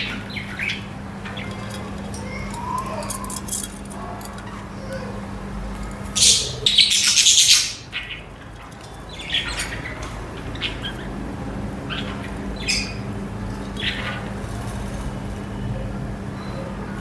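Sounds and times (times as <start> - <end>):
budgerigars chirping and squawking: 0.0 - 1.7, 6.1 - 11.2, 11.9 - 14.7.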